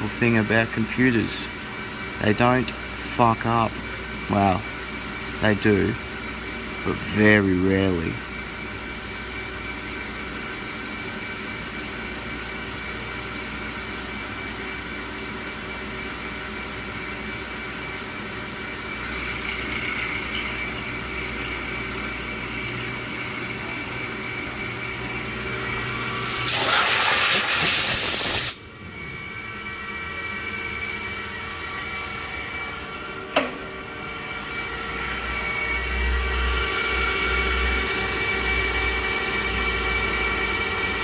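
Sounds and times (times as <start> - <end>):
cnc machine milling steel: 22.4 - 33.2
loud hiss: 26.3 - 28.6.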